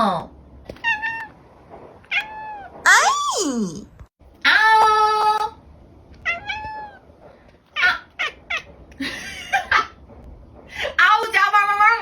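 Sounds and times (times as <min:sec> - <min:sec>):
cat meowing: 0:02.1 - 0:03.3, 0:06.2 - 0:07.0.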